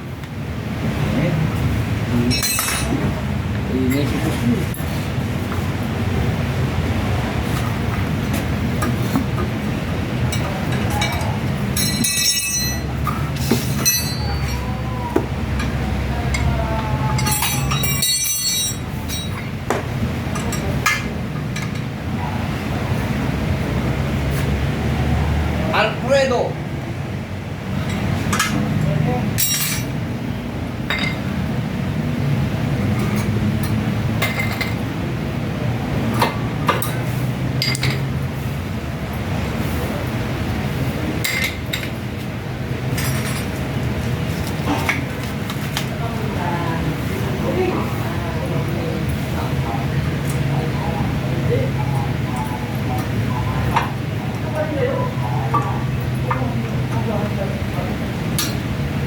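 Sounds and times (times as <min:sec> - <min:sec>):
metal tools clinking: 0:02.3 - 0:03.0, 0:10.4 - 0:14.7, 0:17.1 - 0:19.5, 0:29.4 - 0:30.0, 0:42.9 - 0:43.6
metallic rings: 0:02.3 - 0:03.1, 0:10.9 - 0:14.8, 0:17.1 - 0:19.5, 0:29.4 - 0:30.0.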